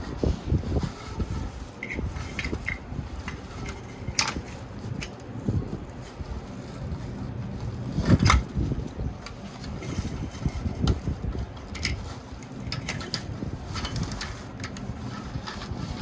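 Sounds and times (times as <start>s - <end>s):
toy trucks rolling: 0.0s - 16.0s.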